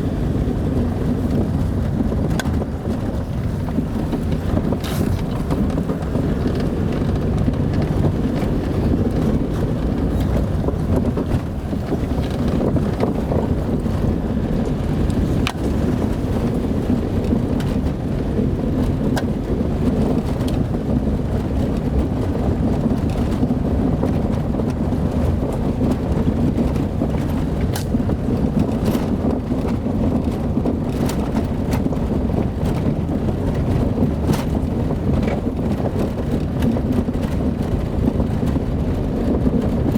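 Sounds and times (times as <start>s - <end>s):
car engine and tyres rumbling: 0.0s - 39.9s.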